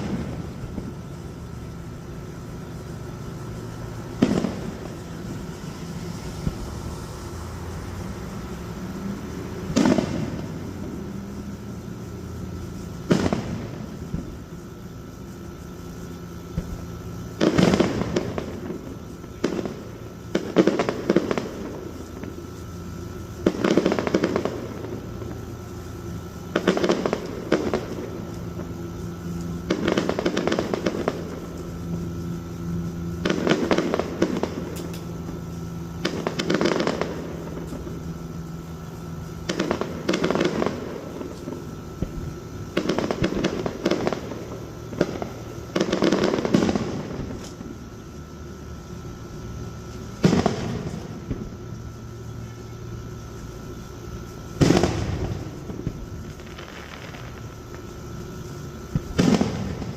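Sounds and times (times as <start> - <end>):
firework crackle: 0.0 - 59.9
low background hum: 0.0 - 59.9
firework shells bursting: 9.6 - 47.9.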